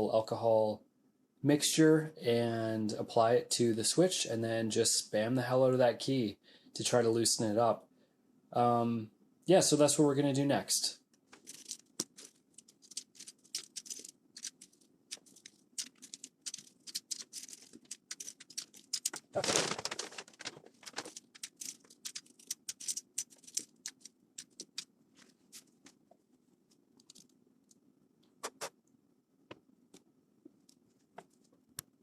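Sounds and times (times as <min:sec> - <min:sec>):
plastic pieces clicking and clattering: 0:11.3 - 0:24.9, 0:27.0 - 0:27.3
paper rustling scrape: 0:11.3 - 0:25.9.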